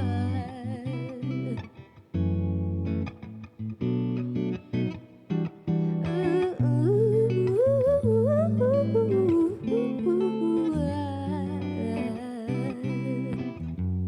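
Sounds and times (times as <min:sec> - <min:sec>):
person humming: 0:00.0 - 0:01.7, 0:06.0 - 0:13.6
guitar chords: 0:00.0 - 0:14.0.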